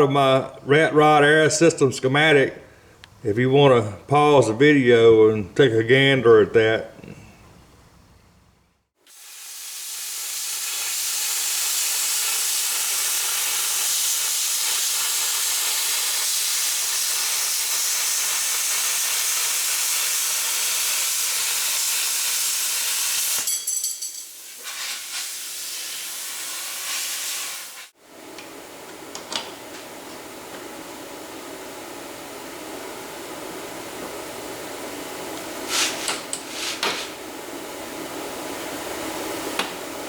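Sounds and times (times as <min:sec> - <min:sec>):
loud steady hiss: 0:09.0 - 0:23.5, 0:24.2 - 0:28.0, 0:34.3 - 0:40.0.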